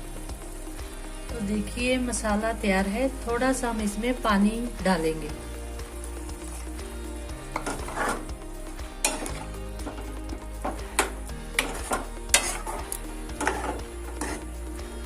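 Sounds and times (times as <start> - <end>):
masala sizzling in oil: 0.0 - 15.0
spoon scraping and knocking pan: 7.5 - 8.4, 9.0 - 14.7.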